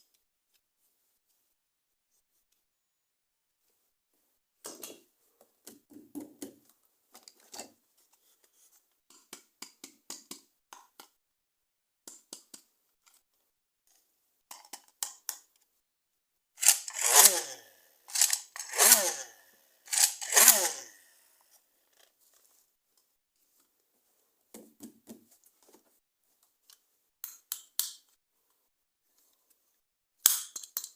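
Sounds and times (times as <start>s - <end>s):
packaging tearing: 16.6s - 19.2s, 19.9s - 20.8s.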